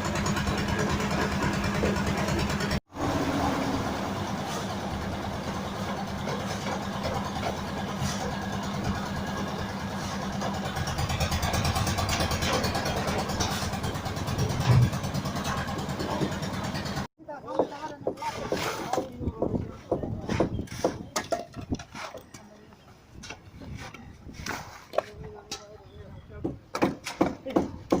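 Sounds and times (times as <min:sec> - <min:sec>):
engine running: 0:00.0 - 0:17.1.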